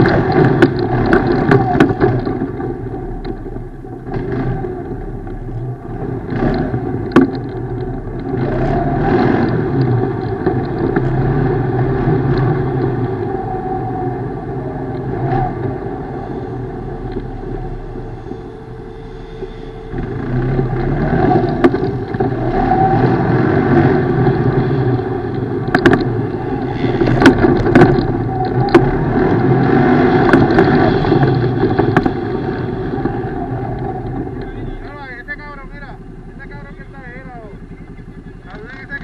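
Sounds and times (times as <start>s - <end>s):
atv engine running: 0.0s - 39.0s
sharp knocks: 25.7s - 26.2s.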